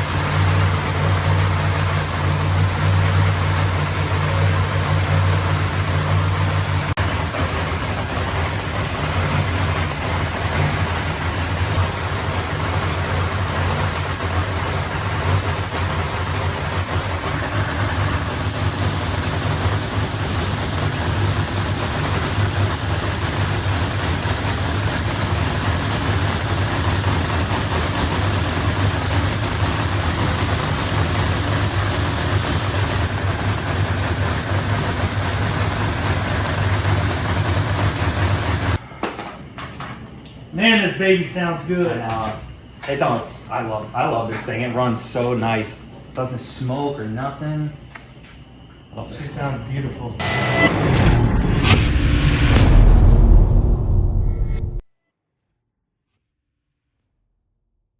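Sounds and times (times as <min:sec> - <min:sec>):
drag-racing engine idling: 0:00.0 - 0:38.8.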